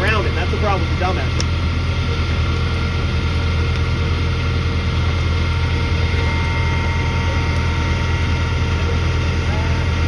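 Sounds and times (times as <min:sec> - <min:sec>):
engine running steadily: 0:00.0 - 0:10.0
faint whining tones: 0:03.4 - 0:10.0.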